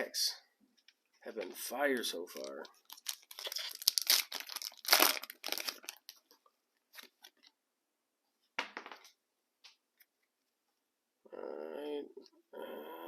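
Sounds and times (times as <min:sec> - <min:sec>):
foil wrapper crinkling and tearing: 0:02.0 - 0:06.3.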